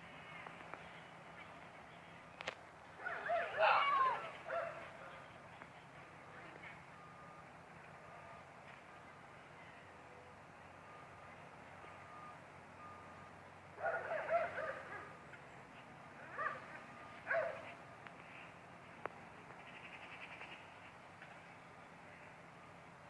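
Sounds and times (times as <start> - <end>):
faint evenly spaced beeps: 4.4 - 19.0.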